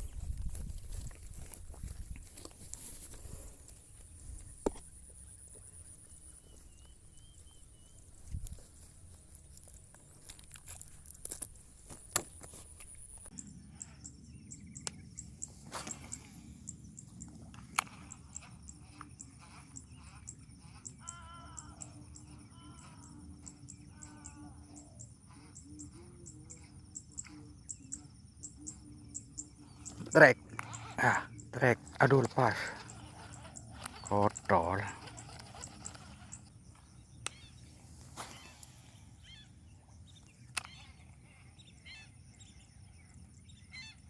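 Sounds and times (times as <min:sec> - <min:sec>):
high insect chirping: 0:00.0 - 0:44.0
short bird calls: 0:17.9 - 0:36.5, 0:37.2 - 0:42.6
sharp clicks: 0:40.5 - 0:40.9.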